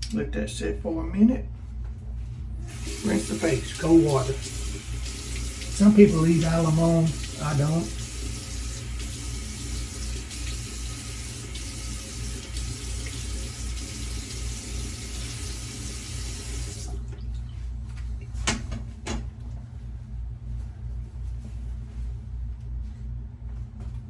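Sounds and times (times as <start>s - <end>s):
low steady hum: 0.0s - 24.0s
sink tap running: 2.6s - 17.3s
face rinsed with water: 2.6s - 17.4s.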